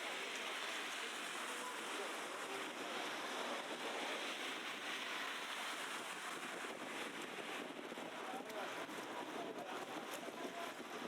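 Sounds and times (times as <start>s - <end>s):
faint voices of passers-by: 8.0s - 11.0s.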